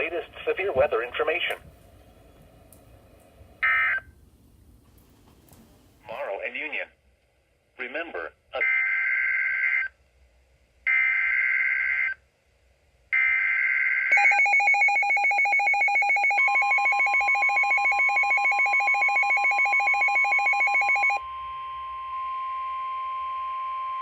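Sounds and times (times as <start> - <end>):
rapid pulsing electronic alarm beeps: 13.2 - 21.2.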